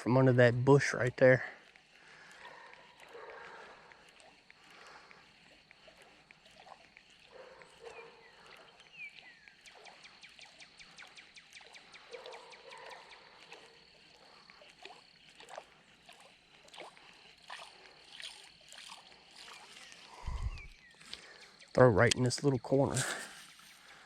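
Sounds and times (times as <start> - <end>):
rapid ticks: 0.0 - 22.6
birds calling: 1.6 - 14.7, 19.2 - 22.6.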